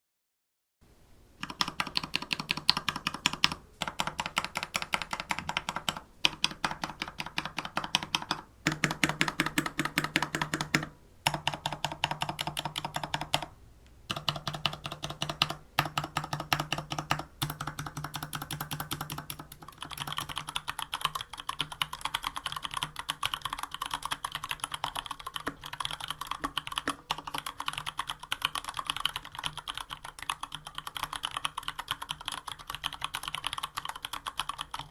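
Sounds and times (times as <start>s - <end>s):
typing on mechanical keyboard: 1.4s - 13.5s, 14.1s - 34.9s.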